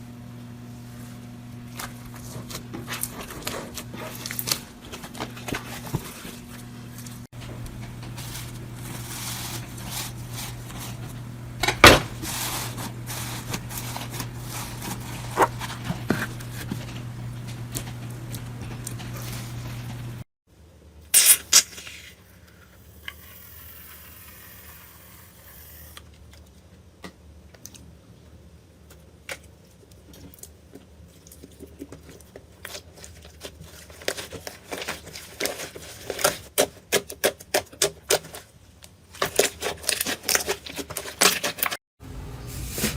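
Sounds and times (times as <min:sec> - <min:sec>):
steady low hum: 0:00.0 - 0:20.9.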